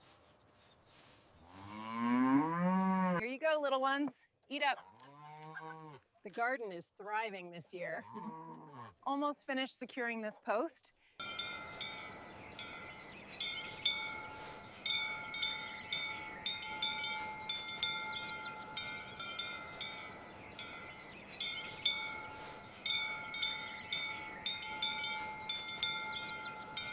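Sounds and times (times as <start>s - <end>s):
ringing metallic strikes: 11.2s - 26.9s.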